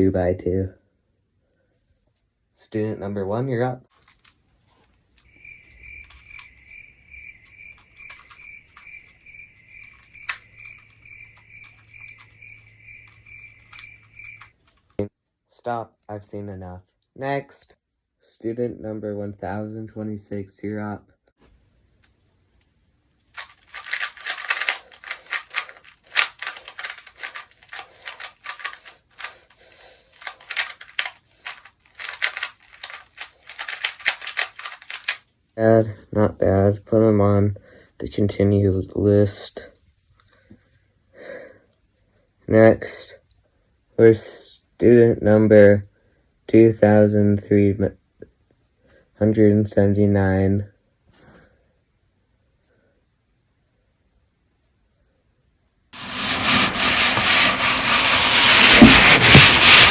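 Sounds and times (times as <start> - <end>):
puzzle cube plastic clicks: 3.9 - 4.4, 5.2 - 15.0, 23.4 - 35.2
cricket chirping: 5.2 - 14.5
sharp clicks: 5.2 - 15.0.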